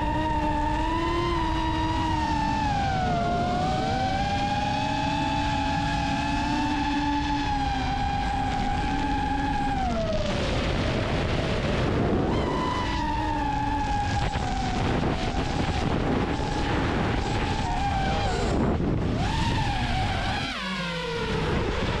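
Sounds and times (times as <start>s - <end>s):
drone motors whining: 0.0s - 22.0s
wind noise: 0.0s - 22.0s.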